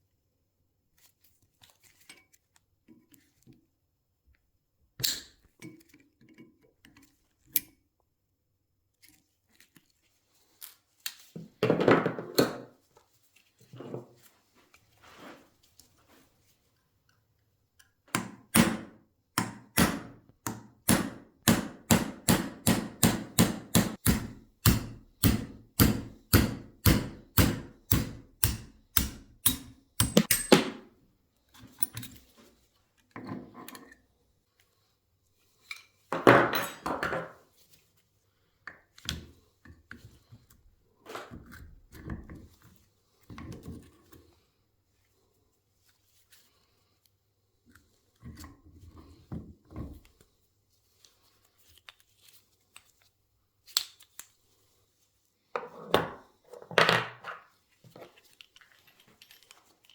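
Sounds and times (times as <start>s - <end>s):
sharp hammer knocks: 20.9s - 30.8s.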